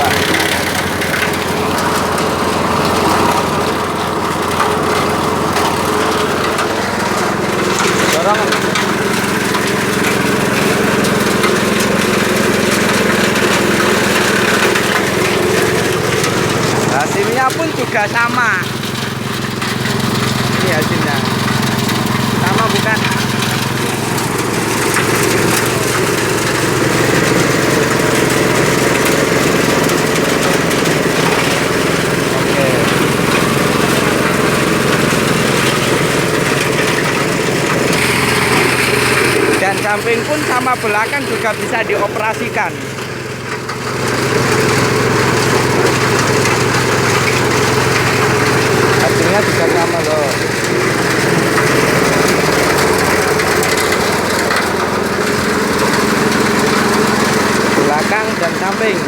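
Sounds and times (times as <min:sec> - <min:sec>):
grass chopper machine humming: 0:00.0 - 0:59.0.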